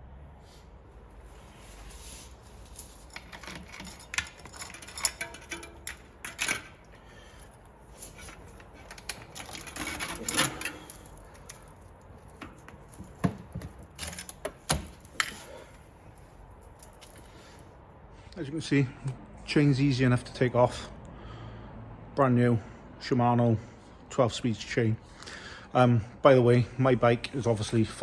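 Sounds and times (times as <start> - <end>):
bicycle chain links rattling: 2.5 - 13.2.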